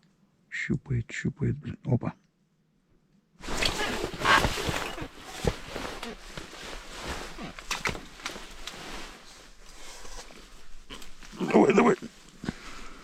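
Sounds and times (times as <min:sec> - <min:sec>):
rustling and scraping: 0:03.4 - 0:13.0.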